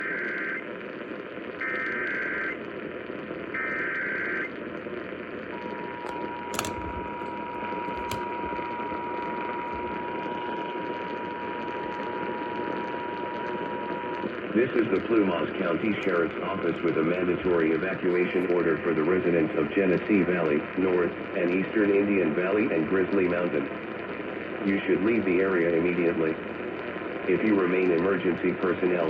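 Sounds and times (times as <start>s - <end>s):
radio static hiss: 0.0s - 29.0s.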